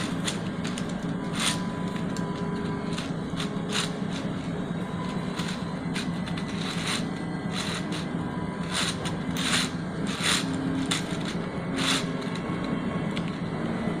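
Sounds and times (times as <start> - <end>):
stepper motor hum: 0.0 - 14.0.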